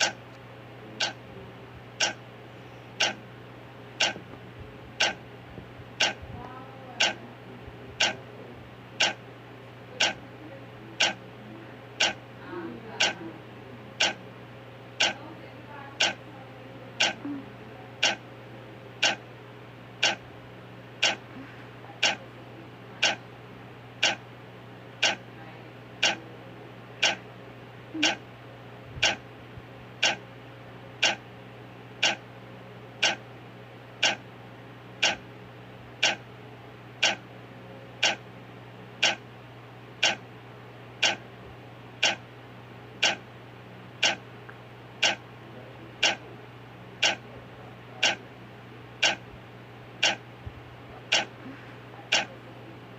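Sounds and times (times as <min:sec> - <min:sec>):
clock ticking: 0:00.0 - 0:00.2, 0:01.0 - 0:01.2, 0:02.0 - 0:02.2, 0:03.0 - 0:03.2, 0:04.0 - 0:04.2, 0:05.0 - 0:05.2, 0:06.0 - 0:06.2, 0:07.0 - 0:07.2, 0:09.0 - 0:09.2, 0:10.0 - 0:10.2, 0:11.0 - 0:11.2, 0:12.0 - 0:12.2, 0:13.0 - 0:13.2, 0:14.0 - 0:14.2, 0:15.0 - 0:15.2, 0:16.0 - 0:16.2, 0:17.0 - 0:17.2, 0:18.0 - 0:18.2, 0:19.0 - 0:19.2, 0:20.0 - 0:20.2, 0:21.0 - 0:21.2, 0:22.0 - 0:22.2, 0:23.0 - 0:23.2, 0:24.0 - 0:24.2, 0:25.0 - 0:25.2, 0:26.0 - 0:26.2, 0:27.0 - 0:27.2, 0:28.0 - 0:28.2, 0:29.0 - 0:29.2, 0:30.0 - 0:30.2, 0:31.0 - 0:31.2, 0:32.0 - 0:32.2, 0:33.0 - 0:33.2, 0:34.0 - 0:34.2, 0:35.0 - 0:35.2, 0:36.0 - 0:36.2, 0:37.0 - 0:37.2, 0:38.0 - 0:38.2, 0:39.0 - 0:39.2, 0:40.0 - 0:40.2, 0:41.0 - 0:41.2, 0:42.0 - 0:42.2, 0:43.0 - 0:43.2, 0:44.0 - 0:44.2, 0:45.0 - 0:45.2, 0:46.0 - 0:46.2, 0:47.0 - 0:47.2, 0:48.0 - 0:48.2, 0:49.0 - 0:49.2, 0:50.0 - 0:50.2, 0:51.1 - 0:51.4, 0:52.1 - 0:52.4.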